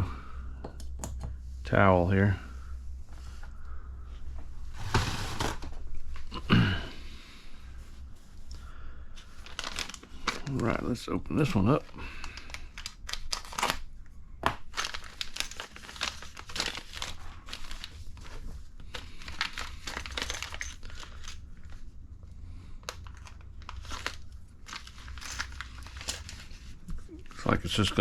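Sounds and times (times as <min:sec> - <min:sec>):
plastic bag crinkling: 0:09.2 - 0:14.0, 0:14.6 - 0:22.0, 0:22.6 - 0:28.0.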